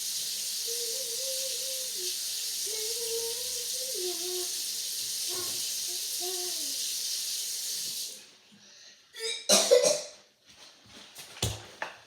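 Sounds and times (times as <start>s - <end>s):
steady hiss: 0.0s - 8.3s
person coughing: 9.2s - 10.2s.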